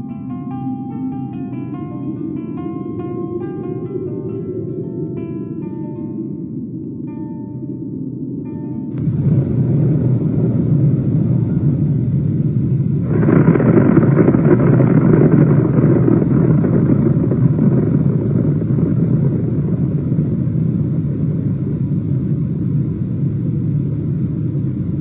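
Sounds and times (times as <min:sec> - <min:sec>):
explosion rumble: 0:08.9 - 0:25.0.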